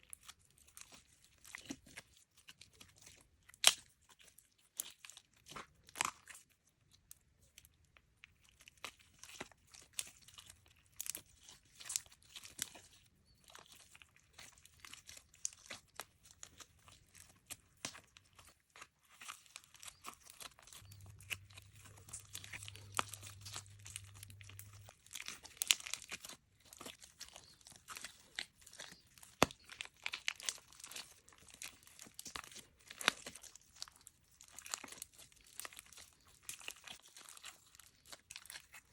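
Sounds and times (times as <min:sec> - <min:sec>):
faint low hum: 0:20.7 - 0:25.6.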